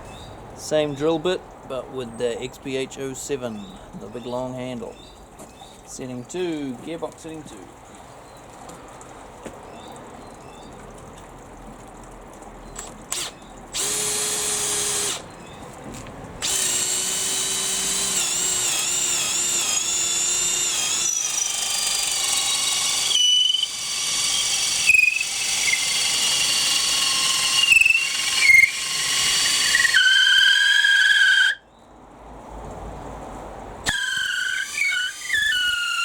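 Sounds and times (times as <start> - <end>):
hammer drill boring into wood: 12.8 - 15.3, 16.4 - 31.6, 33.9 - 36.0.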